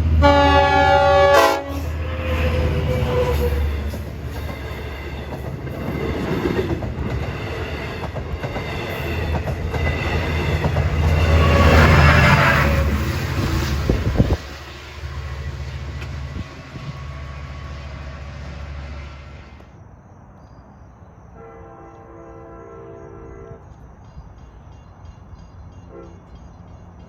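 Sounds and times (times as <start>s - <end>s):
train rumbling past: 0.0s - 27.0s
locomotive air horn: 0.2s - 3.8s, 11.2s - 13.0s, 16.8s - 19.6s, 21.4s - 23.7s, 25.9s - 26.2s.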